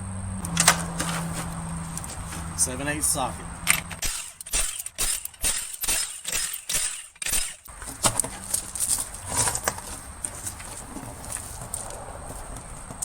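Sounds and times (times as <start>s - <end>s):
handling noise: 0.4s - 5.5s, 7.2s - 13.0s
hand ratchet clicking: 3.6s - 7.7s.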